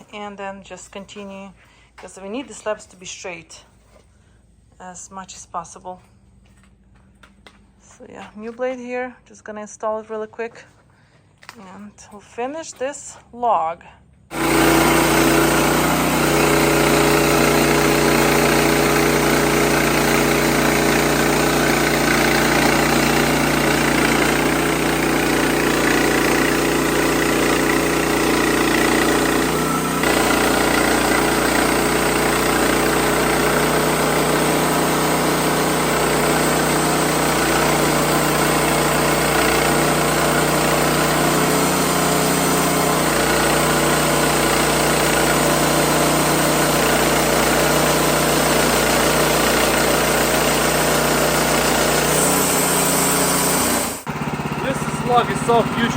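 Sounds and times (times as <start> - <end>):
sawmill engine running: 14.3 - 55.9.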